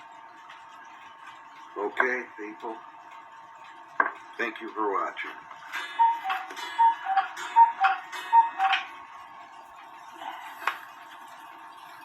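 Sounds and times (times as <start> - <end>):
clock mechanism clicks: 0.0 - 12.0
cuckoo clock calling: 4.1 - 10.9.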